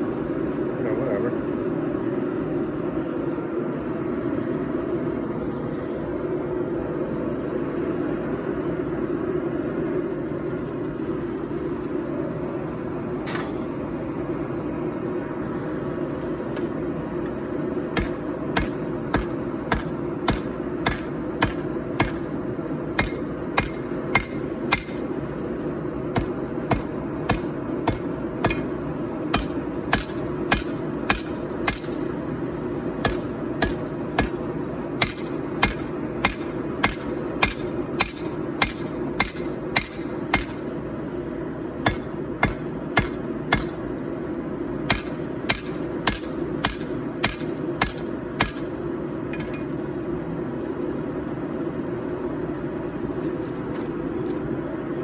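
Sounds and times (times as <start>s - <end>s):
forge running: 17.0s - 49.6s
hammer blows on anvil: 18.0s - 22.3s, 23.0s - 25.1s, 26.2s - 28.7s, 29.4s - 32.2s, 33.0s - 34.4s, 35.0s - 40.7s, 41.9s - 43.8s, 44.9s - 48.7s.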